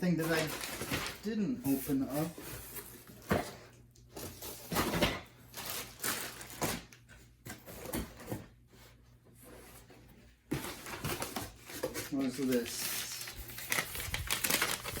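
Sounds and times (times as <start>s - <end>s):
packaging rustling: 0.0s - 3.3s, 5.5s - 7.0s, 10.5s - 15.0s.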